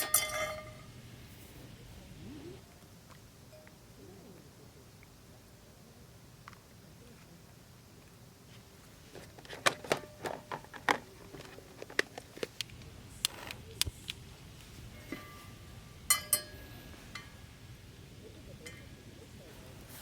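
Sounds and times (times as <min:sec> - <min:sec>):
ringing metal or glass clinks: 0:00.0 - 0:00.9, 0:15.0 - 0:17.3.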